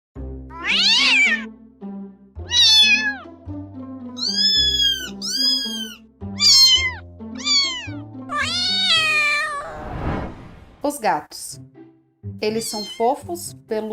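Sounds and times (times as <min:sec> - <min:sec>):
background music: 0:00.2 - 0:13.9
cat meowing: 0:00.5 - 0:01.5, 0:02.4 - 0:03.3, 0:04.2 - 0:09.8, 0:12.6 - 0:13.2.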